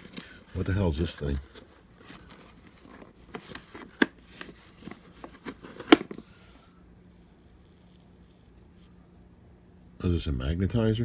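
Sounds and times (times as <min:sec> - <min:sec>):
plastic parts clicking and rattling: 0:00.0 - 0:06.3.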